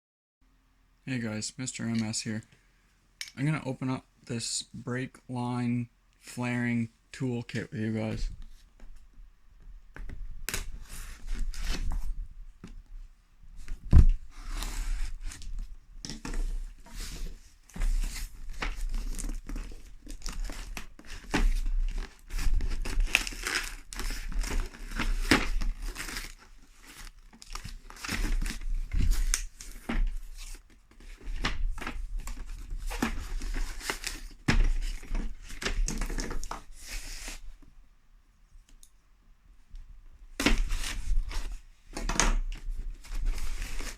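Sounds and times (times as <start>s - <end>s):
packaging tearing and crinkling: 18.0s - 30.5s.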